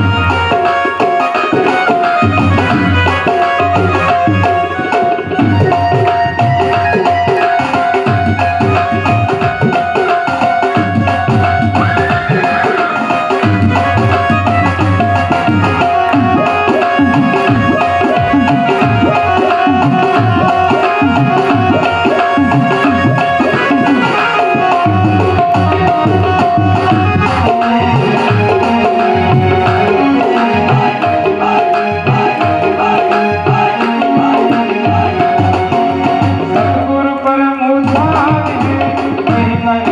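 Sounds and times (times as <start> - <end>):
tabla playing a steady rhythm: 0.0 - 39.9
sustained melodic instrument tones: 10.9 - 37.4.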